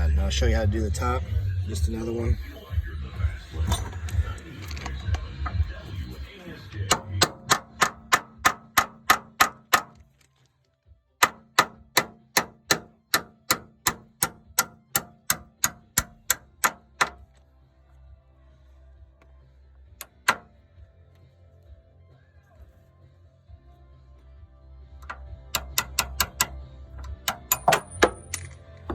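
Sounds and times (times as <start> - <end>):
hammer striking metal tool: 3.6 - 4.2, 6.9 - 10.0, 11.2 - 17.2, 20.0 - 20.5, 25.0 - 28.9.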